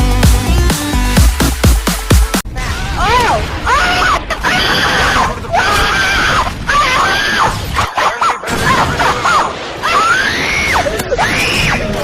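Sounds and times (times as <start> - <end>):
high-pitched screams: 3.7 - 12.0.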